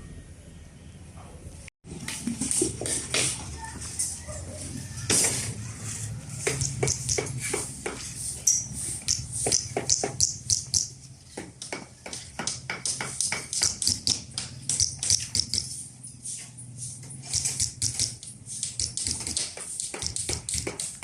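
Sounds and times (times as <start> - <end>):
sharp clicks and taps: 6.4 - 15.7, 17.3 - 21.0.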